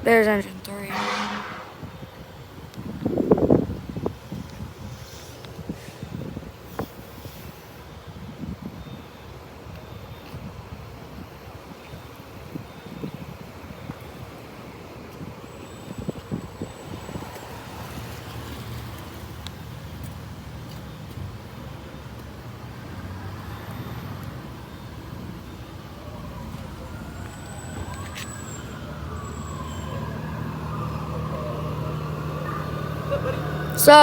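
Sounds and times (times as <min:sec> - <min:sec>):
low rumble of vehicle engines: 0:00.0 - 0:34.0
emergency siren wailing: 0:00.9 - 0:02.6, 0:15.7 - 0:34.0.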